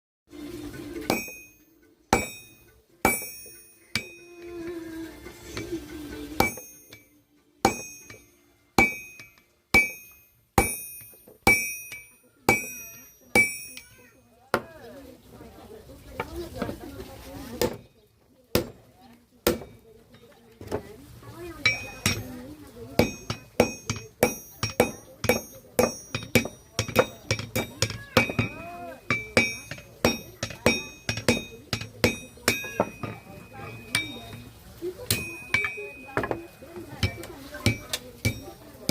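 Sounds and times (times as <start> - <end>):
hammer striking metal on anvil: 1.0 - 4.6, 6.4 - 14.7, 19.5 - 19.8, 21.6 - 22.4, 23.0 - 34.5, 35.1 - 38.9.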